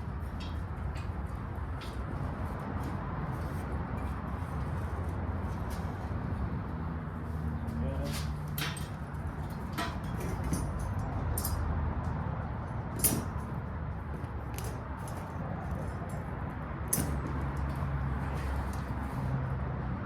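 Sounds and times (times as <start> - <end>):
metal tools clinking: 8.1 - 11.7.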